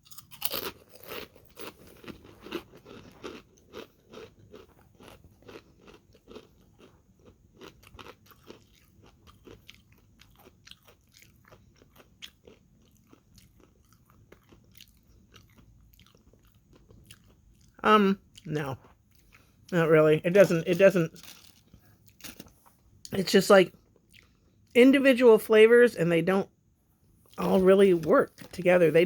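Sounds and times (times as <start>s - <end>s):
potato chips crunching: 0.0s - 17.8s, 18.4s - 22.7s.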